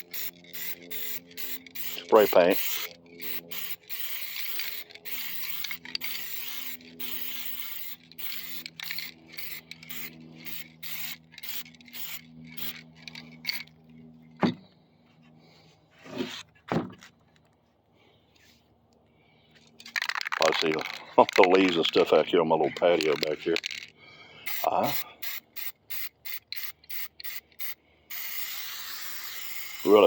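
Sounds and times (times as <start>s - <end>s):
spray paint can hissing: 0.0s - 13.7s, 24.4s - 30.0s.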